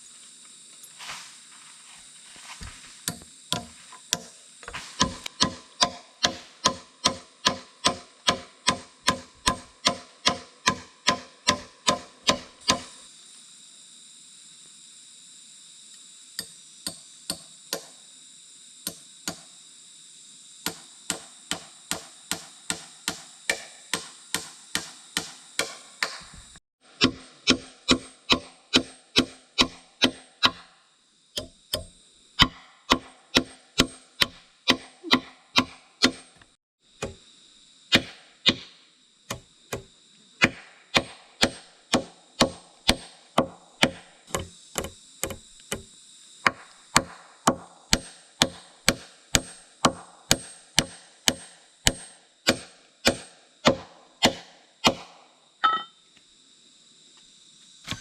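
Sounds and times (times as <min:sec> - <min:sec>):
insects droning: 0:00.0 - 0:58.0
hand tool knocking on wood: 0:03.1 - 0:12.9, 0:41.4 - 0:45.9.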